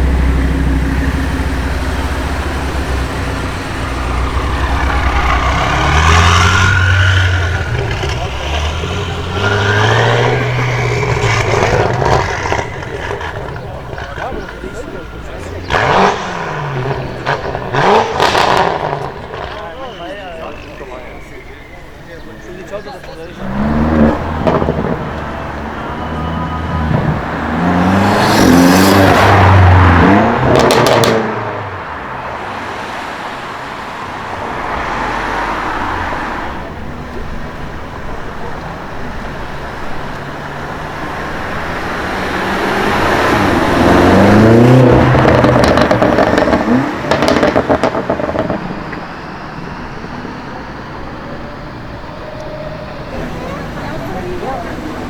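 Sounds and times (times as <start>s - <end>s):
car engine accelerating hard: 0.0s - 21.1s, 23.2s - 55.0s
exhaust pops and crackles: 1.6s - 19.9s, 24.4s - 25.3s, 43.3s - 49.3s.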